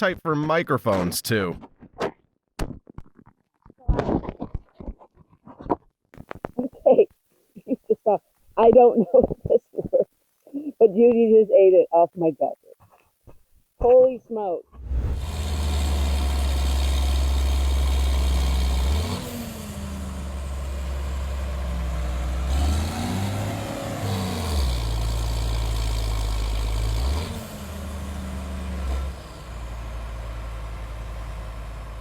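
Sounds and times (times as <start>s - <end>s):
engine humming: 14.7s - 32.0s.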